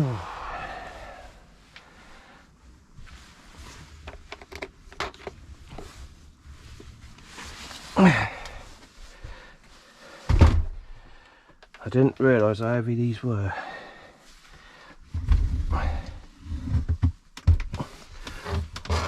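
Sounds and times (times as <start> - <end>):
person grunting: 0.0 - 1.3, 8.0 - 8.6.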